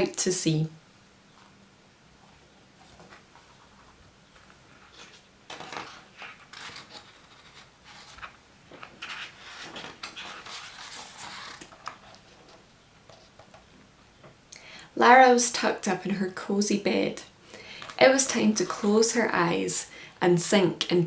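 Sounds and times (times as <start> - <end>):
book pages rustling and turning: 2.2 - 13.7, 17.7 - 19.0.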